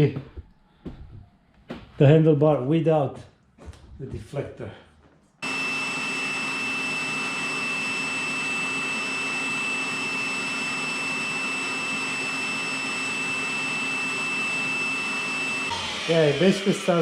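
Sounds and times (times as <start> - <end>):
blower running: 5.4 - 17.0.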